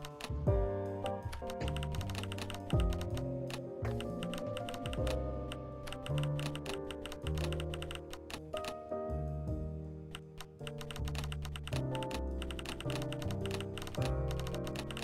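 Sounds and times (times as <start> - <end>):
rapid irregular clicks: 0.0 - 0.4, 1.3 - 8.8, 10.1 - 15.0
instrumental music with kick drum: 0.4 - 5.7.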